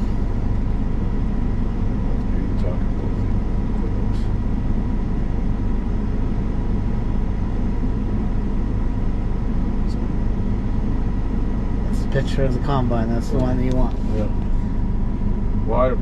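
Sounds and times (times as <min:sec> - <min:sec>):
combine engine drone: 0:00.0 - 0:16.0
faint steady whine: 0:00.0 - 0:16.0.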